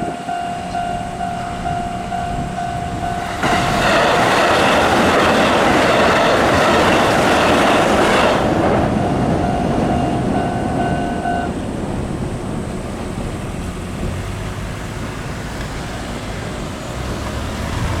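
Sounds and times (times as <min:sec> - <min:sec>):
crossing warning ringing tone: 0:00.0 - 0:13.4
low rumble of train: 0:00.0 - 0:18.0
train wheels clickety-clack: 0:02.8 - 0:13.5.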